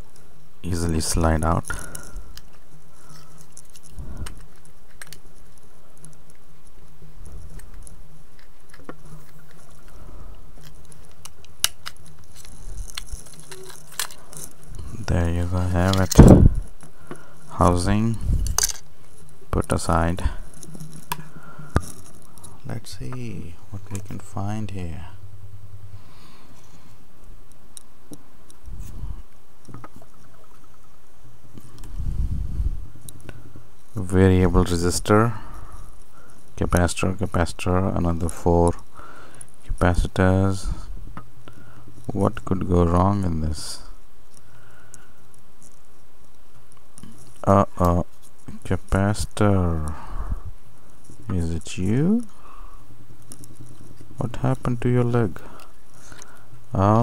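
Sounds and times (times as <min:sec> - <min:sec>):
steady low hum: 0:00.0 - 0:57.0
plastic housing clicks and rattles: 0:10.6 - 0:14.8, 0:15.7 - 0:16.9, 0:18.4 - 0:18.9.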